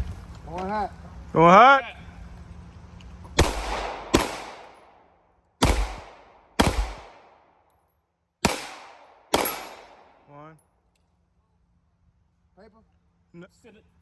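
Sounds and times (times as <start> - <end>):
gunshots: 3.4 - 5.0, 5.6 - 7.5, 8.4 - 10.2.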